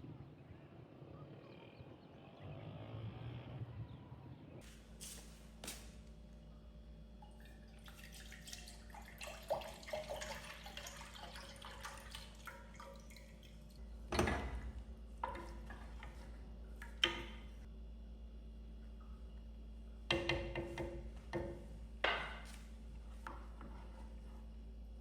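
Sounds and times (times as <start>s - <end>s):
water dripping and trickling: 7.2s - 14.1s.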